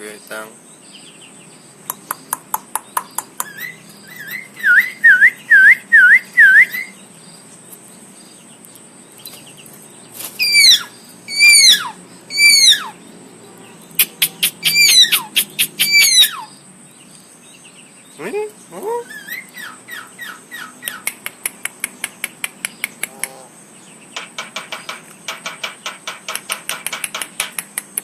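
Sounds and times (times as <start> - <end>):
bird clicks: 1.8 - 4.0, 14.0 - 16.1, 20.8 - 23.4, 24.2 - 28.0
bird whistling: 3.4 - 7.0, 10.4 - 13.0, 14.0 - 16.6, 19.0 - 21.0.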